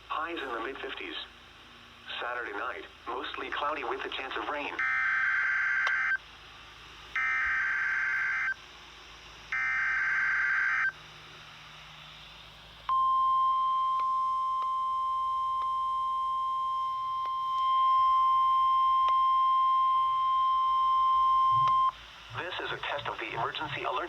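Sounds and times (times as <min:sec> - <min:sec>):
steady high alarm tone: 0:07.2 - 0:08.6, 0:09.5 - 0:11.0, 0:12.9 - 0:24.0.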